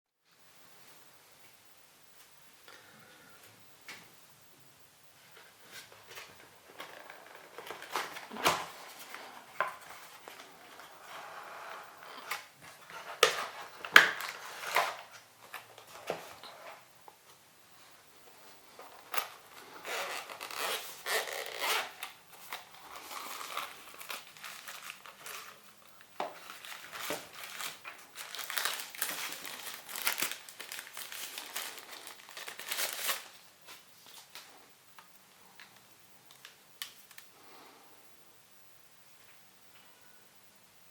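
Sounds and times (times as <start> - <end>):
plastic wrap crinkling: 5.3 - 17.4, 18.1 - 37.3.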